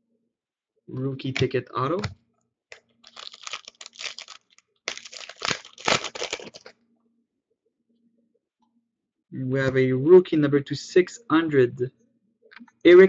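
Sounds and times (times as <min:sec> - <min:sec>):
plastic wrapper tearing and crinkling: 0:03.0 - 0:06.7.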